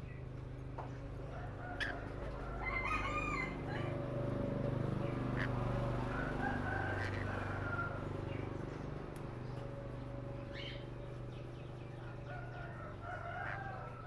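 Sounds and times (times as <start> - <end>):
parrots squawking: 1.7 - 3.8, 5.3 - 5.7, 6.3 - 8.0.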